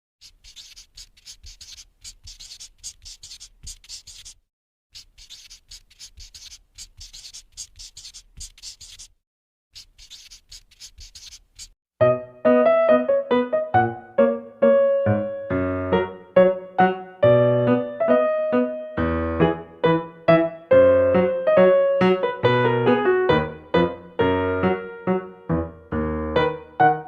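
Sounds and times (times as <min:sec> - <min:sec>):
oil pastel scratching on paper: 0:00.2 - 0:11.8
piano music: 0:12.0 - 0:27.0.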